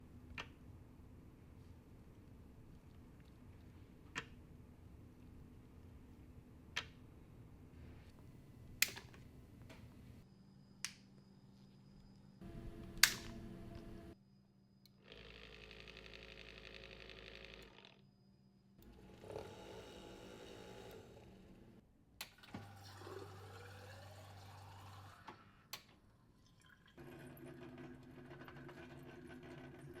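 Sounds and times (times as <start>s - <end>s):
machine hum with steady tones: 12.1s - 15.5s.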